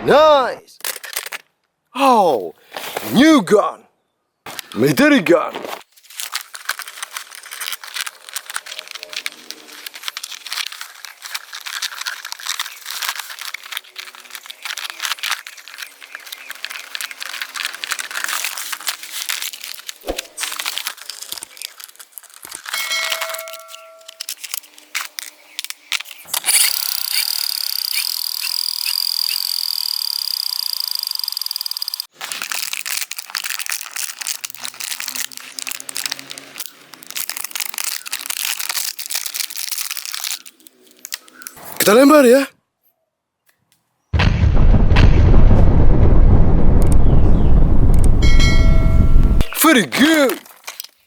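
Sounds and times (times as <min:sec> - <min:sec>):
crinkling handling noise: 0:00.8 - 0:01.8, 0:02.6 - 0:03.2, 0:04.5 - 0:27.3, 0:32.0 - 0:42.4, 0:48.1 - 0:51.0
small clicks: 0:21.2 - 0:32.1
brief tones: 0:48.0 - 0:49.6.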